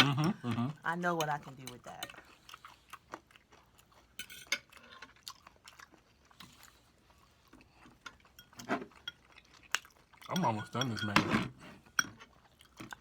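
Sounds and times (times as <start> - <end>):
person chewing food: 1.9 - 10.6, 11.7 - 13.0.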